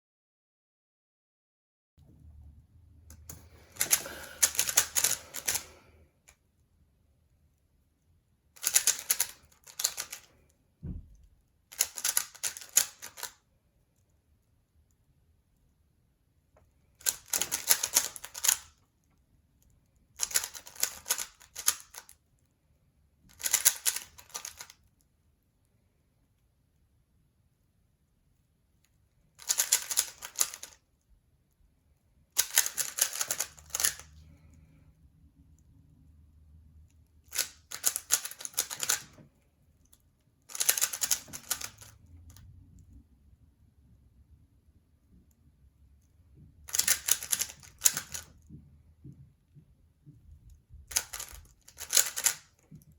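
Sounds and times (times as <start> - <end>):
puzzle cube plastic clicking: 3.1 - 6.4, 8.6 - 10.5, 11.4 - 14.1, 16.7 - 22.5, 23.2 - 25.1, 28.8 - 31.0, 32.3 - 34.1, 37.0 - 42.5, 46.6 - 48.4, 50.5 - 52.9.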